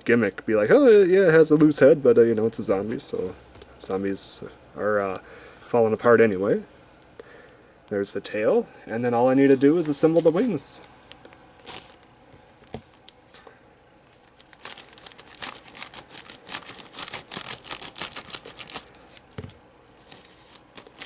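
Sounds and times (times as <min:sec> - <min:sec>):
plastic parts clicking and crackling: 0:14.3 - 0:18.9.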